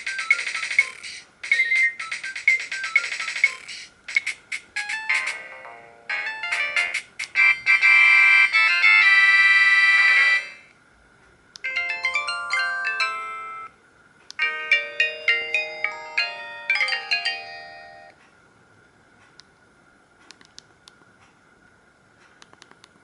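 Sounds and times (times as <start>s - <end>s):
electronic polyphonic ringtone: 4.8s - 10.6s, 11.7s - 13.7s, 14.4s - 18.1s.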